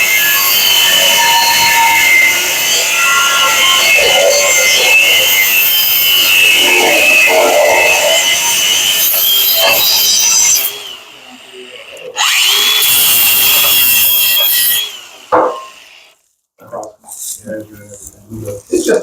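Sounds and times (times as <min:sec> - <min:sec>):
angle grinder cutting steel: 0:00.0 - 0:16.2
sharp knock: 0:15.3 - 0:15.8.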